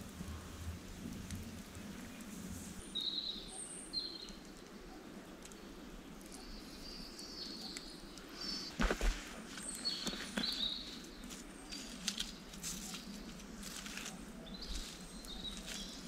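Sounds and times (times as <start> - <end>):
birds chirping: 0.0 - 16.0
low background noise: 0.0 - 16.0
knocks and rustles: 8.7 - 10.6.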